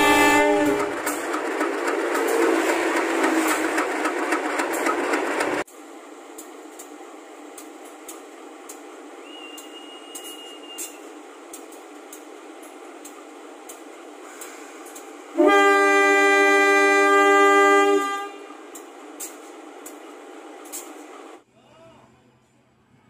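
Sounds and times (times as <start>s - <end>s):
train air horn: 0.0s - 1.2s, 15.4s - 18.6s.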